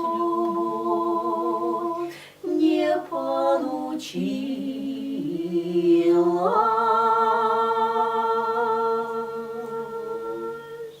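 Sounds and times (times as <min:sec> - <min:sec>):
women singing in harmony: 0:00.0 - 0:11.0.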